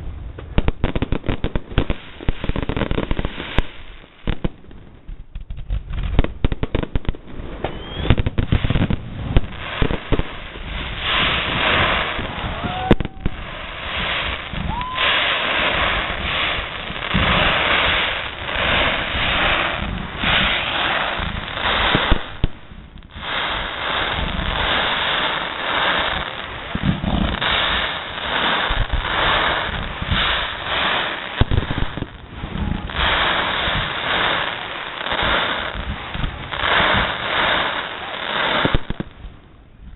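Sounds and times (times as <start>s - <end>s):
dense firework crackling: 0.0s - 39.9s
fireworks cracking and banging: 0.0s - 39.9s
firework whistles: 7.5s - 39.1s.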